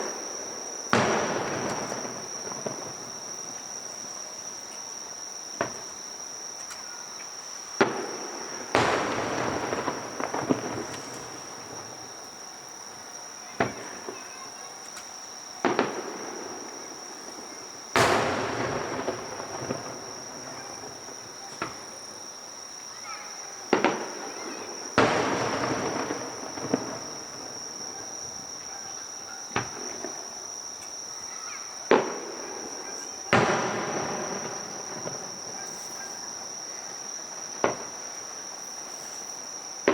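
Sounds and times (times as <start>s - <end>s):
fireworks bangs: 0.0s - 39.9s
fireworks crackling: 0.0s - 39.9s
insects droning: 0.0s - 39.9s.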